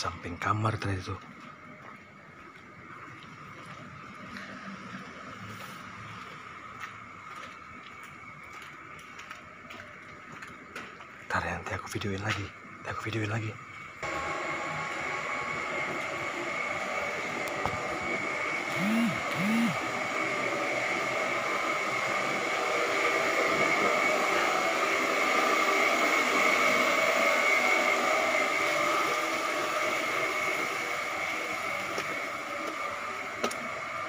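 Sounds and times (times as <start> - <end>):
short rising and falling sounds: 14.0 - 33.2
vehicle running: 18.6 - 20.0.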